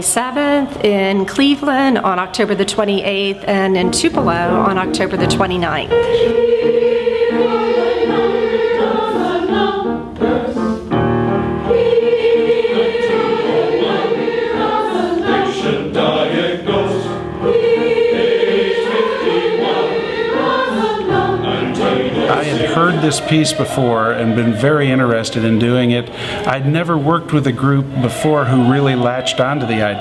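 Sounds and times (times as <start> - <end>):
choir singing: 3.9 - 30.0.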